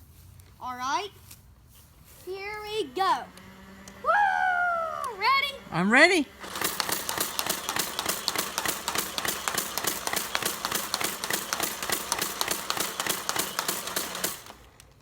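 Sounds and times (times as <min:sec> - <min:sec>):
flywheel motors humming: 0:02.7 - 0:15.0
toy blaster darts clattering: 0:06.4 - 0:14.6.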